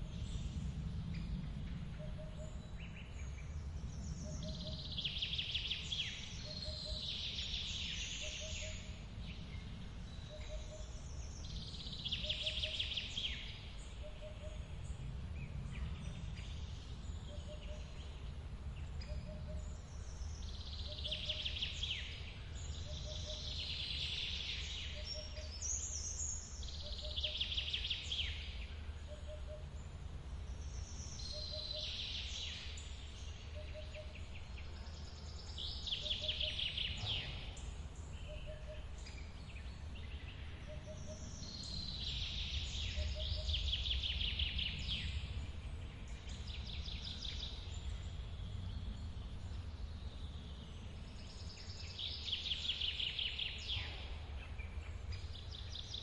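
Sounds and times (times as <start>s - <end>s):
songbird trilling: 35.6s - 39.5s.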